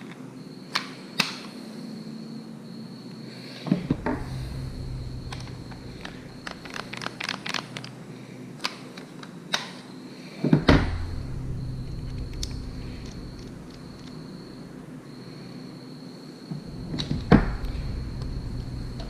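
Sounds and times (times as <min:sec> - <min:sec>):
louder thump: 0:10.5 - 0:13.7.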